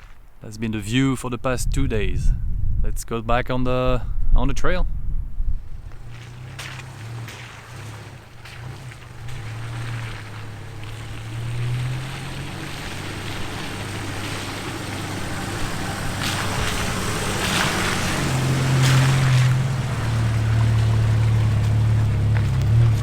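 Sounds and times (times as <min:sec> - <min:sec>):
car engine running at low speed: 0:05.0 - 0:23.0.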